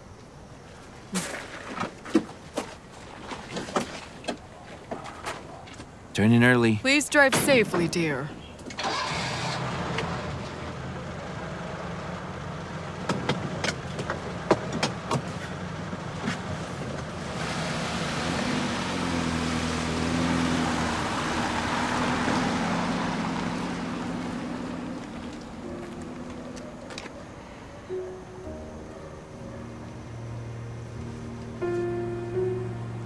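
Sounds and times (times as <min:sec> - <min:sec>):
car engine driving off: 0:08.6 - 0:26.4.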